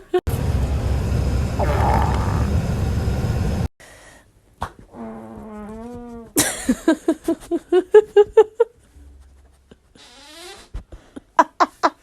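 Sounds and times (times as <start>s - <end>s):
farting: 1.6s - 2.6s.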